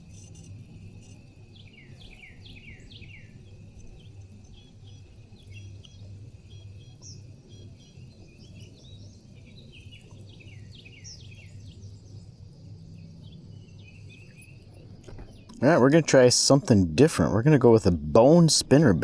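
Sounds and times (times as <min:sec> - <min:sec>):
faint insect drone: 0:00.0 - 0:19.0
birds chirping: 0:00.1 - 0:11.9, 0:13.2 - 0:19.0
steady low hum: 0:11.4 - 0:19.0.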